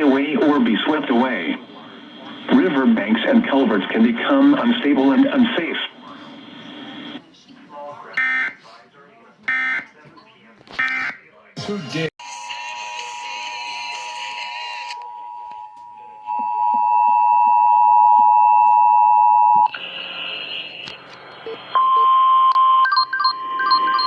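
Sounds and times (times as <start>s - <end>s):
two-tone attention signal: 21.4s - 24.0s.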